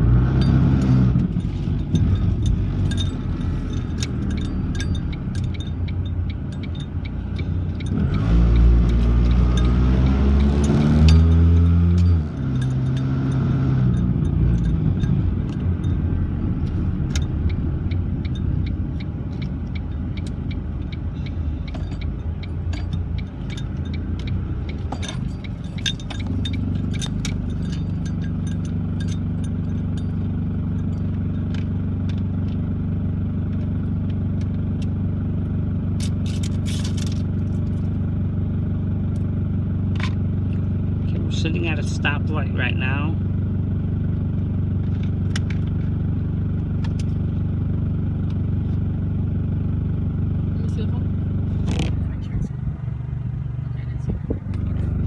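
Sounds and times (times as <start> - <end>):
car engine idling: 0.0 - 55.0
car engine rumble: 0.0 - 55.0
sharp clicks and rattles: 0.2 - 35.0, 35.9 - 38.1, 44.1 - 48.9, 50.7 - 55.0.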